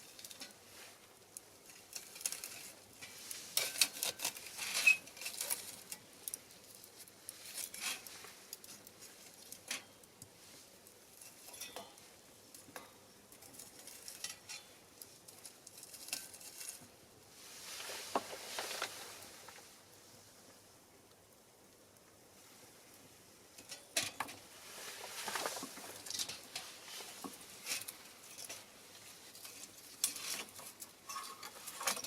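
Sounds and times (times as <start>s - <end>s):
small fire crackling and popping: 0.0s - 32.0s
soft hissing rush: 17.0s - 31.9s.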